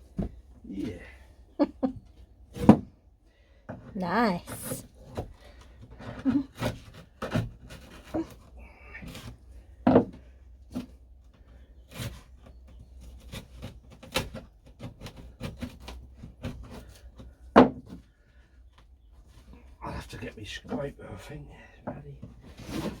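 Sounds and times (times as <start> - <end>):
knocks and scrapes on wood: 5.1 - 8.4, 9.0 - 18.1.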